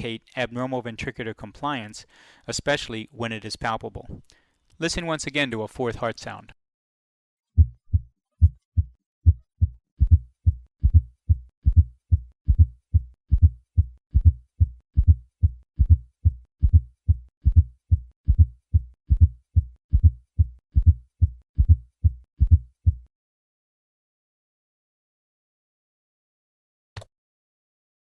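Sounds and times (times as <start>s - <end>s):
heartbeat with extra low beat: 7.6s - 23.1s.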